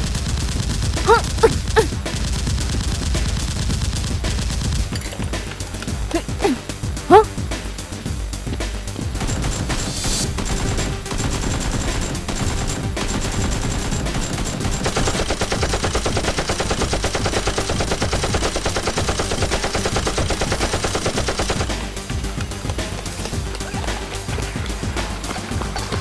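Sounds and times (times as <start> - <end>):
rapid automatic gunfire: 9.2 - 22.1.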